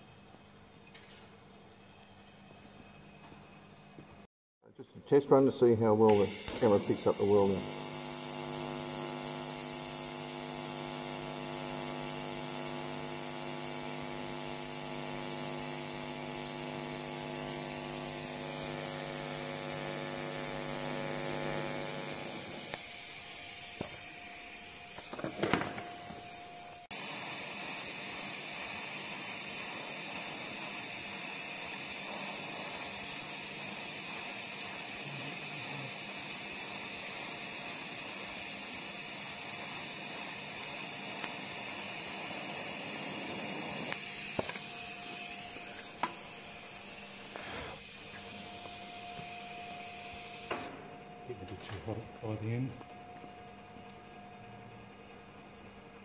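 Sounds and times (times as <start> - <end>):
welding arc hiss: 5.4 - 52.8
welding buzz: 5.9 - 52.7
welding crackle: 6.1 - 50.7.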